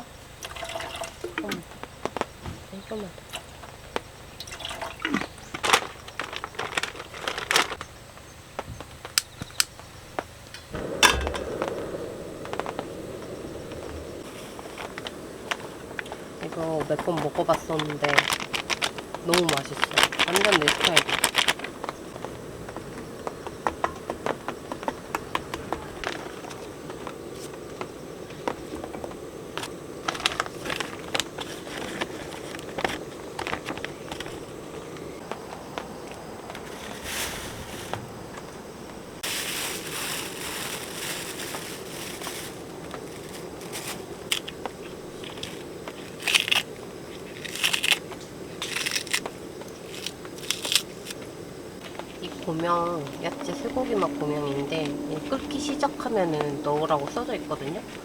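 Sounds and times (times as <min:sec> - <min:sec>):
steady rain: 0:00.0 - 0:58.0
plastic packaging crinkling: 0:04.4 - 0:07.9, 0:10.7 - 0:22.2, 0:29.6 - 0:35.2, 0:39.2 - 0:54.0
steady rushing noise: 0:10.5 - 0:20.2.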